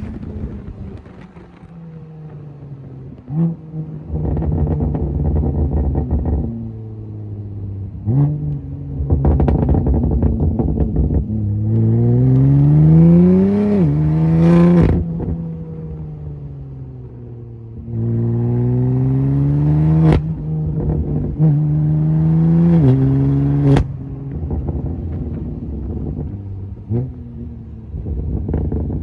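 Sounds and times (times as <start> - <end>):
exhaust cracks: 0.0 - 6.7, 22.7 - 29.0
car engine revving: 0.0 - 29.0.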